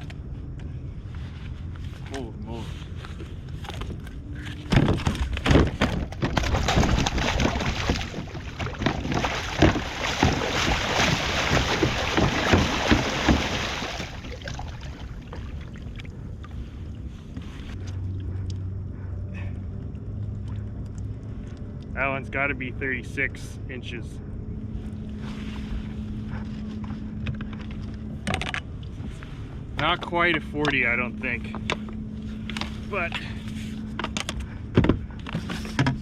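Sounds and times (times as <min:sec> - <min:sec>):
low steady hum: 0:00.0 - 0:36.0
water splashing and sloshing: 0:01.1 - 0:19.1, 0:19.7 - 0:21.9, 0:24.7 - 0:36.0
knocks against plastic kayak: 0:04.7 - 0:13.6.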